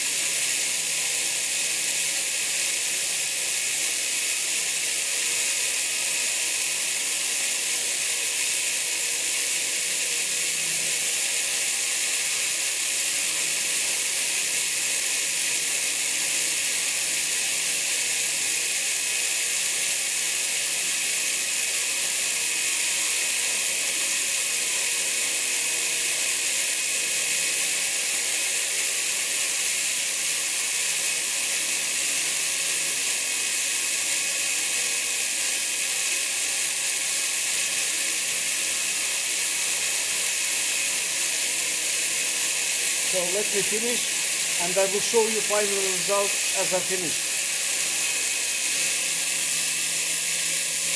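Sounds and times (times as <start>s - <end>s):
belt sander grinding: 42.4s - 50.9s.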